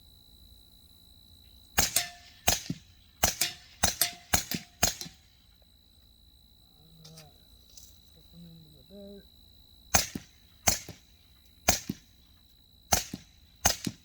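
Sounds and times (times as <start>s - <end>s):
suppressed gunshots: 1.8s - 5.4s, 9.9s - 12.2s, 12.9s - 14.0s.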